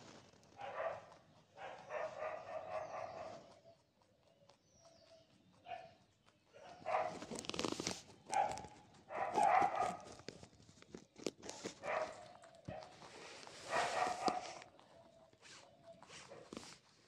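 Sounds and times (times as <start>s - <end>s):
rabbit crunching a carrot: 0.0s - 17.0s
animal calls: 0.5s - 7.4s, 11.6s - 16.8s.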